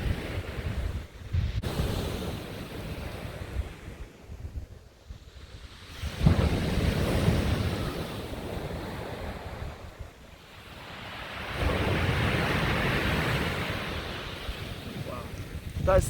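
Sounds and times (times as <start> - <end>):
sea surf on beach: 0.0 - 16.0
wind buffeting microphone: 0.0 - 16.0.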